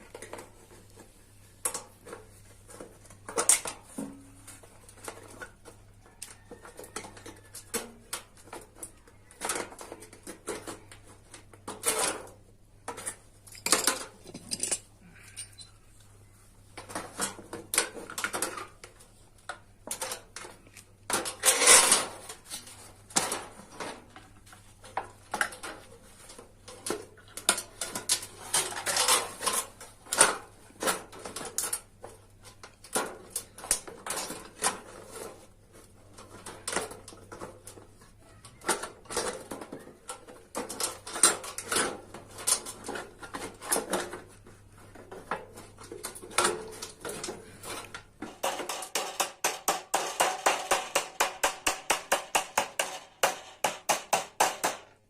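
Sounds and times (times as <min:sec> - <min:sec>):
sheet metal and tools clattering: 0:11.7 - 0:15.8, 0:45.0 - 0:54.9.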